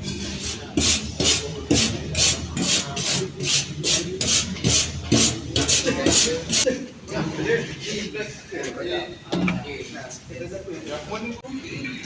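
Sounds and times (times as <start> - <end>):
brush scraping a surface: 0.1 - 6.7.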